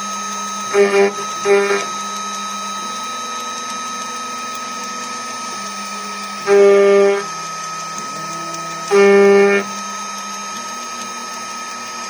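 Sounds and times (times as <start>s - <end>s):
router spindle milling metal: 0.7s - 2.0s, 5.6s - 9.9s
cutter biting into metal: 0.8s - 1.9s, 8.0s - 9.8s.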